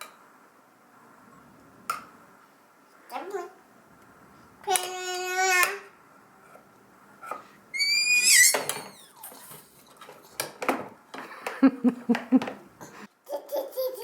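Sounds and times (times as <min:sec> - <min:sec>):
baby squealing: 0:07.7 - 0:09.4.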